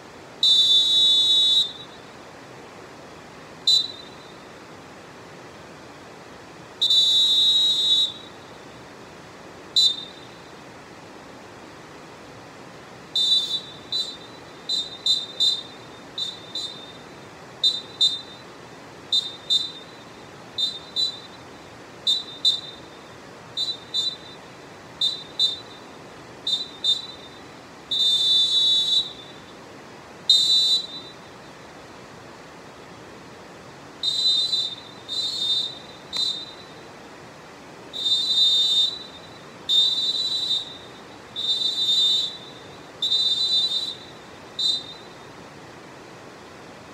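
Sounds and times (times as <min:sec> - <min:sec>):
referee whistle blasts: 0:00.4 - 0:02.1, 0:03.7 - 0:04.5, 0:06.8 - 0:08.6, 0:09.8 - 0:10.5, 0:13.2 - 0:25.9, 0:26.5 - 0:29.5, 0:30.3 - 0:31.3, 0:34.0 - 0:36.8, 0:37.9 - 0:45.2.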